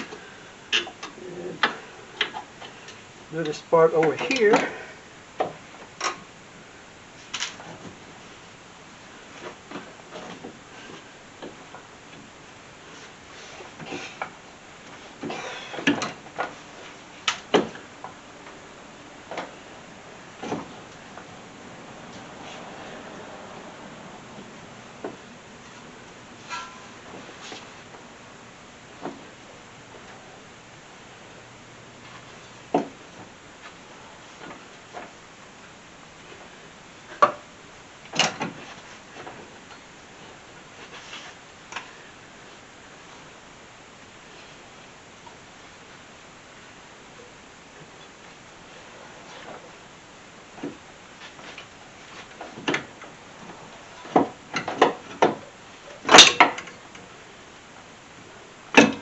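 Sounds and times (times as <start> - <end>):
metal clanks and knocks: 26.4 - 27.0.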